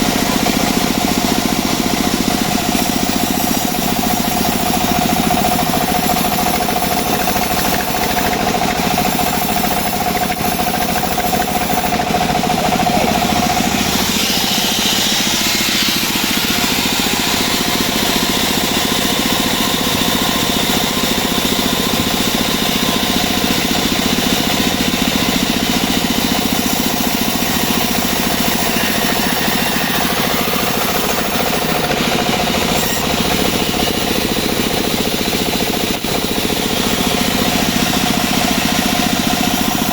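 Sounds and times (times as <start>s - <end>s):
bandsaw sawmill running: 0.0s - 39.9s
high hiss of sawing: 0.0s - 39.9s
steady whine: 2.4s - 20.9s.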